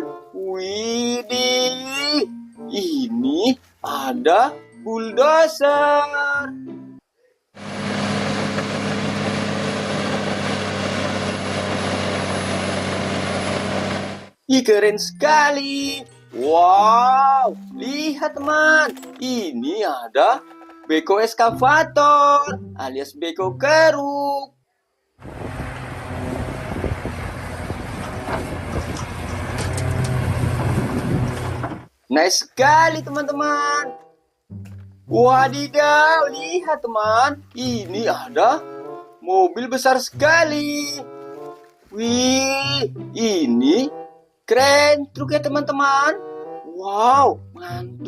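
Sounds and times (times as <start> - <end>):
heavy engine throbbing: 7.6 - 14.4, 25.2 - 31.9
clicks and rattles: 18.8 - 19.3.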